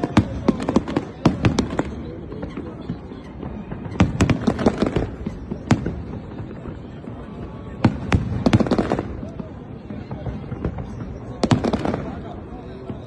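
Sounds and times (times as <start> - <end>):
fireworks bangs: 0.0 - 13.0.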